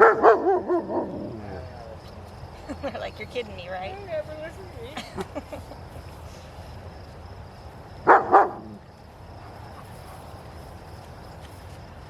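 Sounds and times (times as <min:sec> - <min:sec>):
dog barking: 0:00.0 - 0:01.3, 0:08.0 - 0:08.8.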